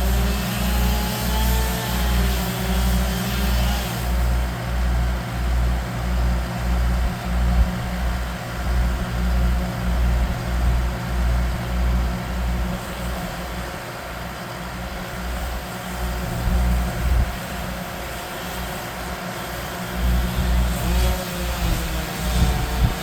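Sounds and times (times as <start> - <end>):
large engine idling: 4.0 - 17.3.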